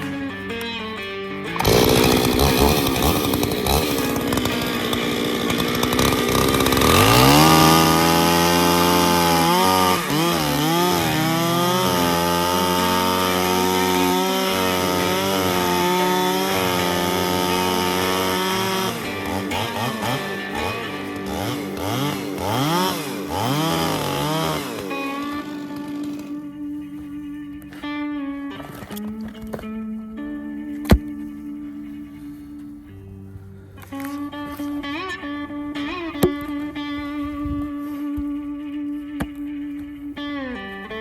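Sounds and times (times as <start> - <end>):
chainsaw running and revving: 1.5 - 26.5.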